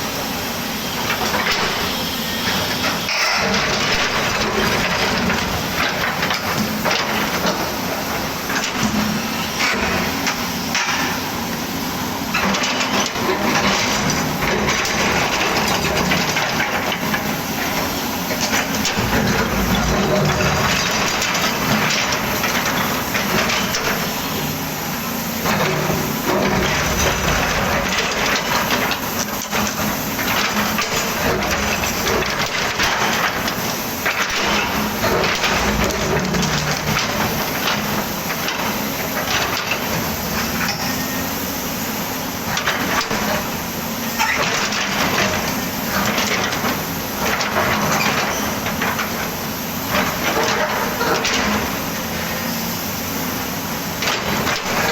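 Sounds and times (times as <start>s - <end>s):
excavator diesel engine running: 0.0s - 41.7s.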